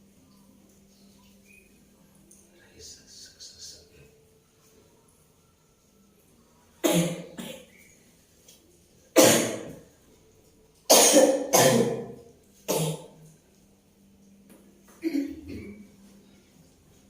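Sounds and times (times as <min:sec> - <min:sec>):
woman coughing hard: 0:06.8 - 0:07.6, 0:09.2 - 0:09.7, 0:10.9 - 0:13.1, 0:15.0 - 0:15.8.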